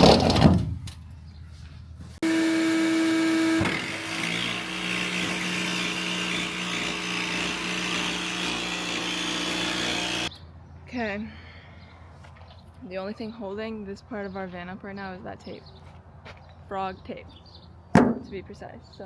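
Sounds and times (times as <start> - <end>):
power drill drilling sheet metal: 2.2 - 10.3.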